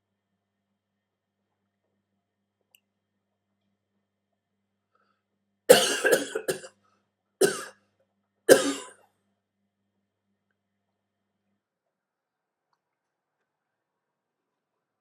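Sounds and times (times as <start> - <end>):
person coughing: 5.7 - 6.7, 7.4 - 7.8, 8.5 - 9.0.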